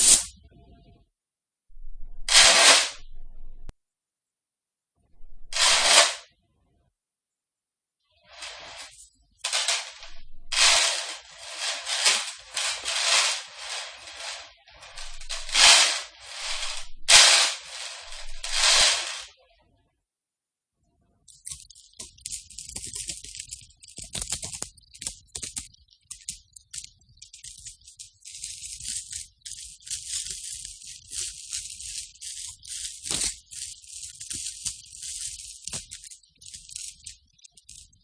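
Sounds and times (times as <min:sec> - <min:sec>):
metal chains rattling: 0:08.3 - 0:19.3, 0:25.6 - 0:38.0.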